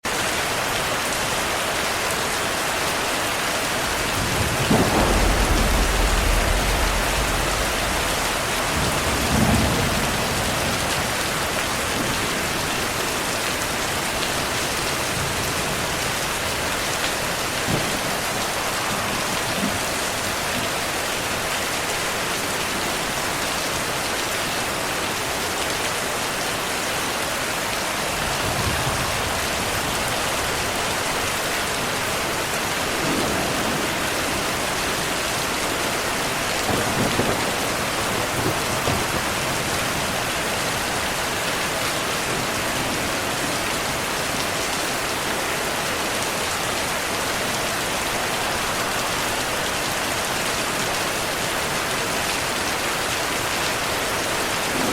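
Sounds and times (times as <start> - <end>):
steady rain: 0.0 - 54.9
thunder rumbling: 3.3 - 21.5, 27.6 - 41.4, 54.2 - 54.9.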